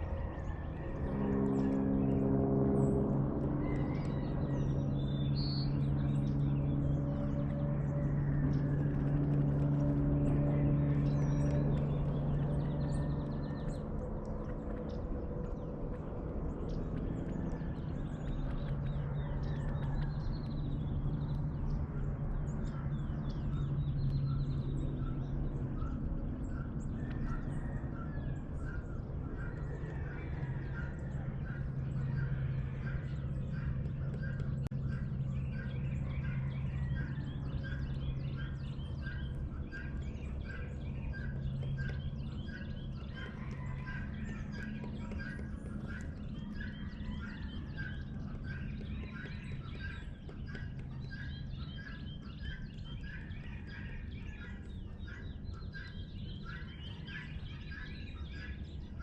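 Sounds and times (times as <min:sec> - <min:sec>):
bird chorus chirps: 0:00.0 - 0:59.0
steady low hum: 0:00.0 - 0:59.0.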